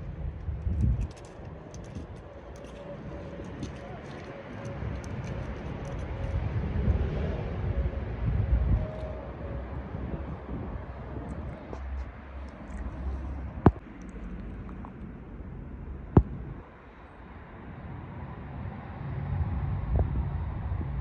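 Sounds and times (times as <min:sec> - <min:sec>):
low rumbling background noise: 0:00.0 - 0:21.0.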